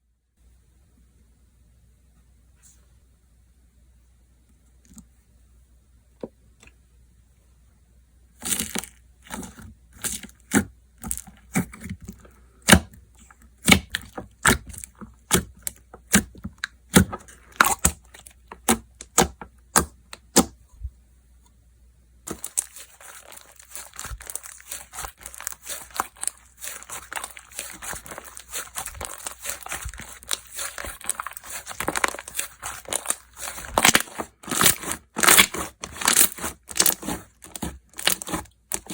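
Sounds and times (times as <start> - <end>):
slime popping and crackling: 13.6 - 20.5, 22.3 - 38.9.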